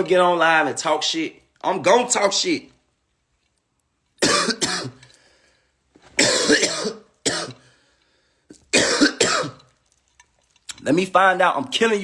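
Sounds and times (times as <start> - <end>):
man coughing: 4.2 - 5.0, 6.2 - 7.6, 8.7 - 9.6.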